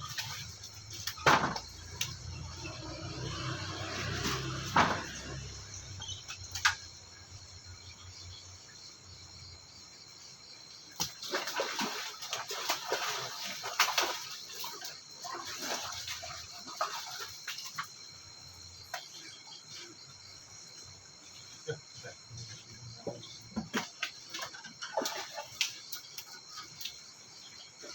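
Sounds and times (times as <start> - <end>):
water splashing: 0.0 - 7.0, 10.9 - 19.4, 21.3 - 27.2.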